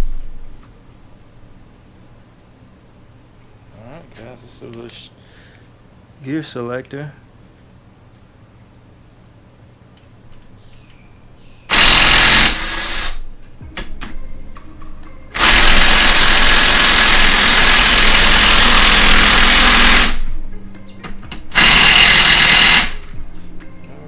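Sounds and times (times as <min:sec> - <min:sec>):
power drill running: 0:11.7 - 0:13.3, 0:15.3 - 0:20.4, 0:21.5 - 0:23.1.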